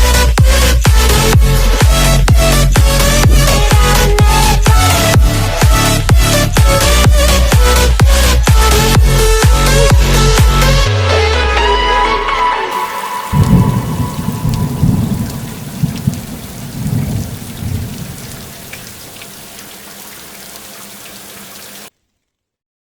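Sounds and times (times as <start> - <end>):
thunder rumbling: 2.2 - 7.3, 11.4 - 19.8
steady rain: 11.3 - 21.9.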